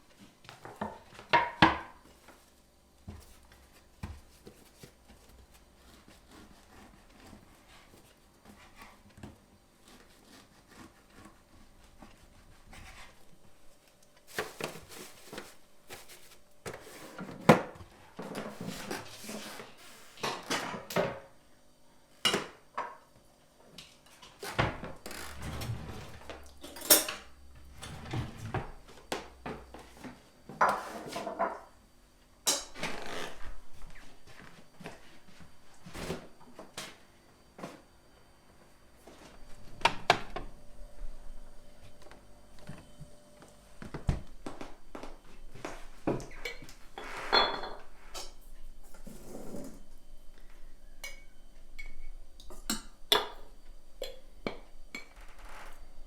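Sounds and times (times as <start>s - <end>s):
pots and dishes clattering: 46.3s - 48.4s.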